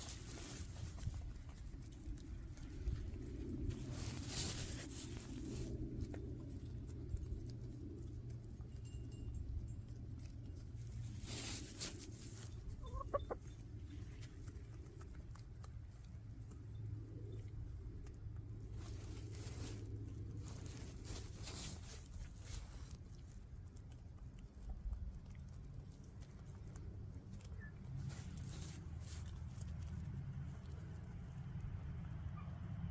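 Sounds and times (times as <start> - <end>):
low rumble: 0.0 - 11.6
hens clucking: 12.8 - 13.5.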